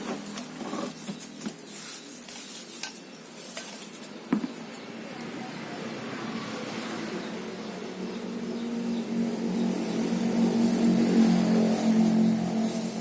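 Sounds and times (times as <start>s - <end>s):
plastic packaging rustling: 0.0s - 4.7s.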